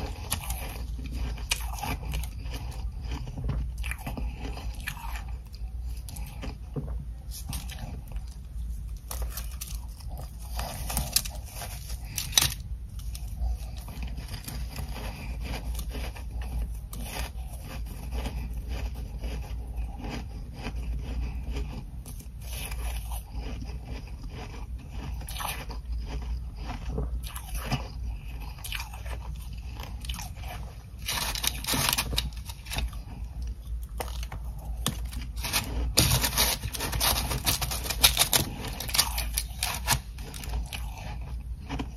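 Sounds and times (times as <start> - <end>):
chewing ice crunches: 0.0 - 41.9
ice scraping: 31.0 - 32.9, 34.8 - 40.6.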